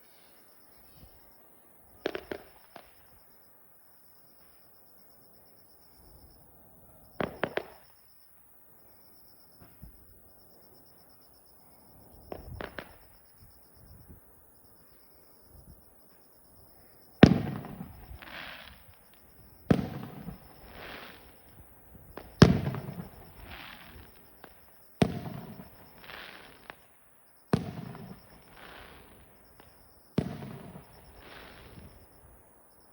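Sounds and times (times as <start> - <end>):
fireworks crackling hiss: 1.9 - 3.4, 6.0 - 8.0, 12.1 - 14.1, 14.8 - 32.9
distant fireworks booming: 2.0 - 3.1, 6.0 - 8.0, 12.0 - 14.3, 17.1 - 32.5.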